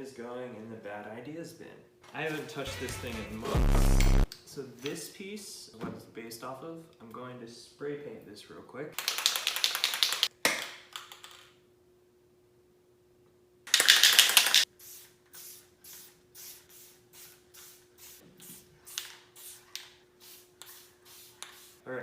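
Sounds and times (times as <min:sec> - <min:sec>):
spray paint can hissing: 0:13.7 - 0:21.8.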